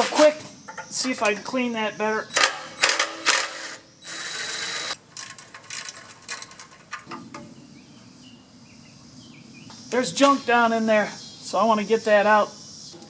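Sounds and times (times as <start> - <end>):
tools and metal parts clicking: 2.3 - 7.4
crickets chirping: 7.6 - 13.0.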